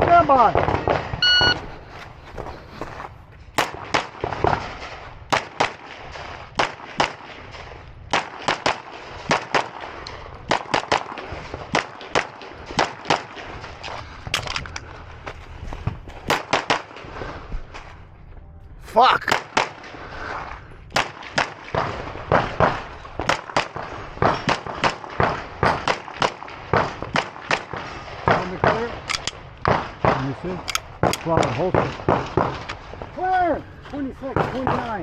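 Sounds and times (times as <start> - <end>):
shot timer beep: 1.2 - 1.6
pistol shots: 3.6 - 13.5, 16.2 - 17.1, 19.3 - 20.0, 20.9 - 32.8.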